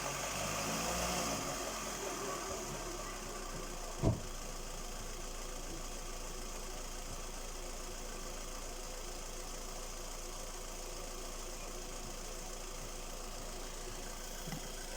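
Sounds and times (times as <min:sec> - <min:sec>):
car engine idling: 0:00.0 - 0:14.9
loud thump: 0:04.0 - 0:04.3.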